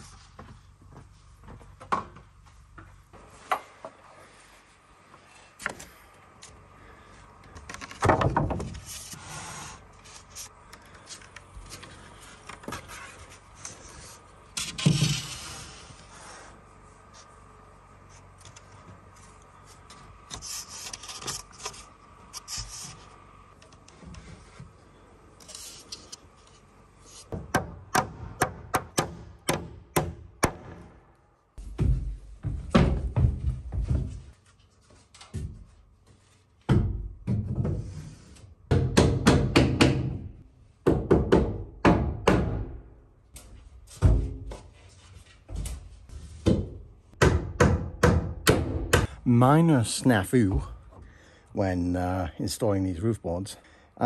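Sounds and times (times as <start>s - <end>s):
hammer driving nails into wood: 27.3s - 30.9s.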